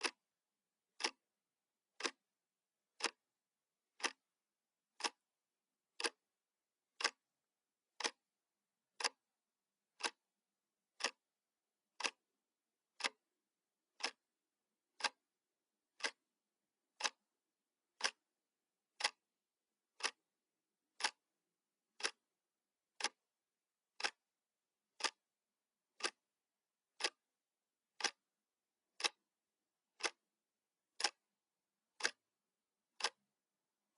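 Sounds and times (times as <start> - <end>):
clock ticking: 0.0 - 0.2, 0.9 - 1.2, 1.9 - 2.2, 2.9 - 3.2, 3.9 - 4.3, 4.9 - 5.3, 5.9 - 6.3, 6.9 - 7.2, 7.9 - 8.3, 8.9 - 9.3, 9.9 - 10.3, 10.9 - 11.3, 11.9 - 12.3, 12.9 - 13.3, 13.9 - 14.3, 14.9 - 15.3, 15.9 - 16.3, 16.9 - 17.3, 17.9 - 18.3, 18.9 - 19.3, 19.9 - 20.3, 20.9 - 23.3, 23.9 - 24.3, 24.9 - 26.3, 26.9 - 27.3, 28.0 - 30.3, 30.9 - 31.3, 31.9 - 33.4.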